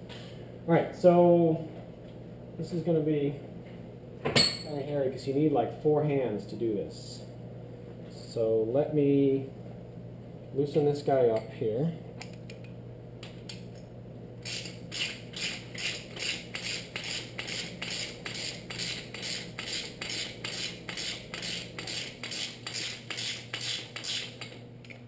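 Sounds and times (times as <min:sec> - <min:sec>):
ratchet wrench clicking: 0:14.4 - 0:24.6.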